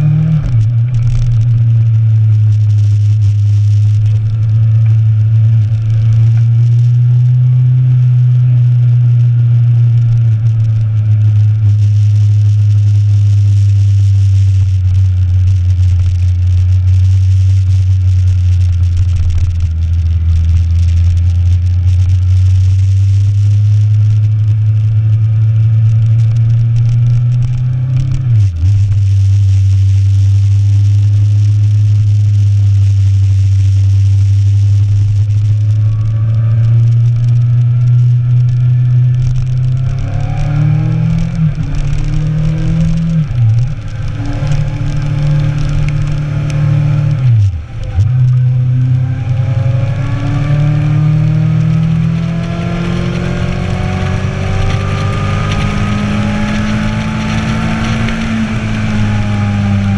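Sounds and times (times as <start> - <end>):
motorcycle engine accelerating: 0.0 - 59.9
wind rush: 51.6 - 59.9.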